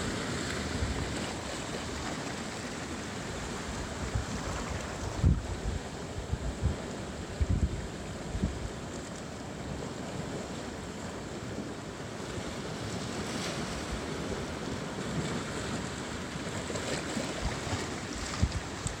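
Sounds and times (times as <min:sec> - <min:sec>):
surf washing over rocks: 0:00.0 - 0:19.0
wind buffeting microphone: 0:03.7 - 0:08.8, 0:17.2 - 0:19.0.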